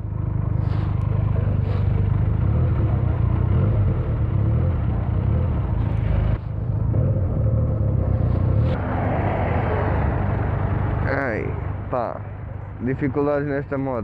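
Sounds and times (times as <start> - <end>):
motorcycle engine running: 0.0 - 8.8.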